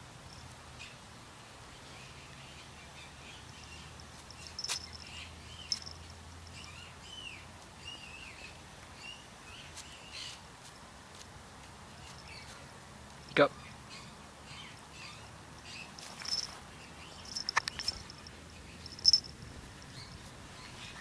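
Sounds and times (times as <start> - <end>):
small birds chirping: 1.7 - 10.4, 11.9 - 12.6, 13.2 - 21.0.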